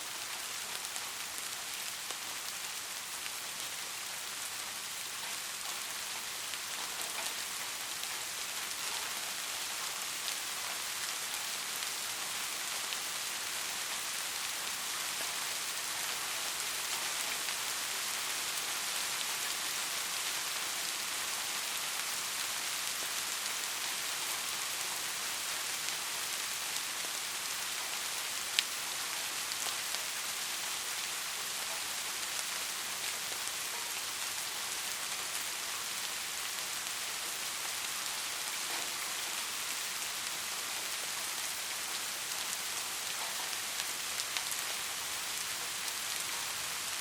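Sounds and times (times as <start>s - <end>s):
soft rain falling: 0.0s - 47.0s.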